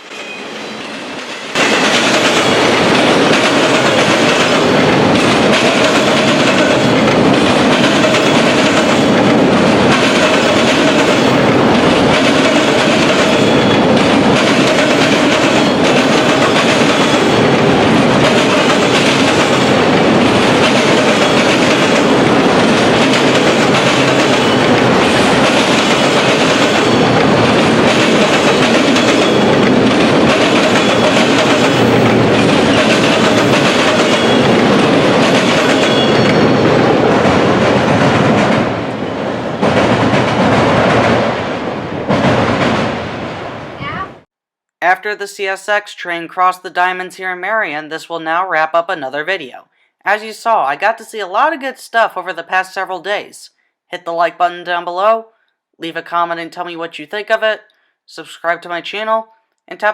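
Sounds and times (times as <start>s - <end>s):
freight train rumbling past: 0.0s - 44.3s.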